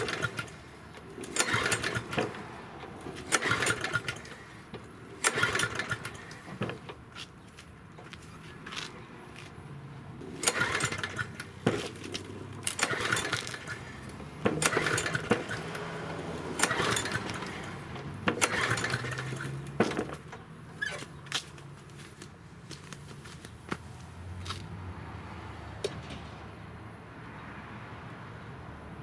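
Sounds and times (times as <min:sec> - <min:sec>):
lawn mower engine pull-start: 0:00.0 - 0:07.0, 0:10.2 - 0:22.0.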